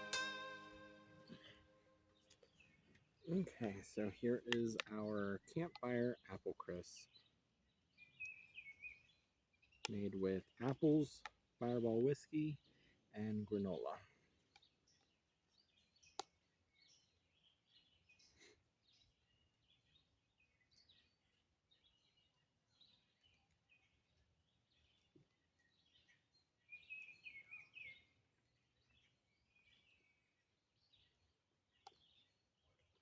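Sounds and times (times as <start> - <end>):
bird chirps: 0.0 - 11.0, 12.3 - 33.0.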